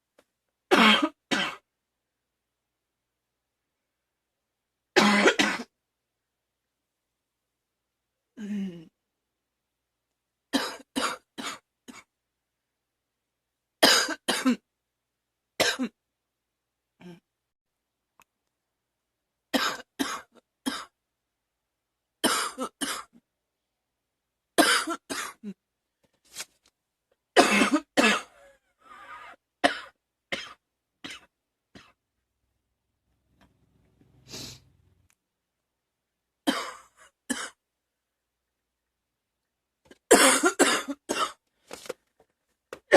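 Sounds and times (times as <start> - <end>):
girl coughing: 13.8 - 14.6, 24.6 - 25.6, 27.4 - 28.4, 40.1 - 41.4.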